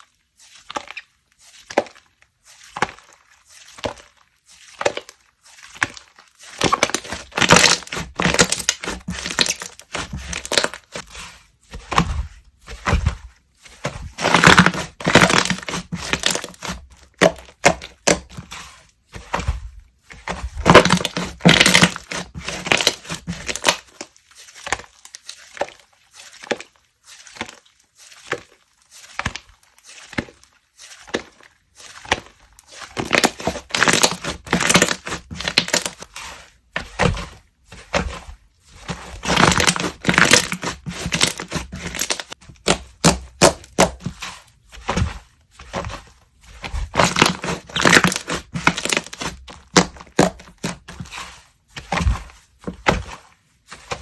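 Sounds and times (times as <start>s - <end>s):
slime crackling and popping: 3.8s - 11.1s, 14.2s - 18.5s, 20.6s - 25.8s, 32.0s - 36.1s, 39.2s - 44.1s, 46.8s - 50.8s.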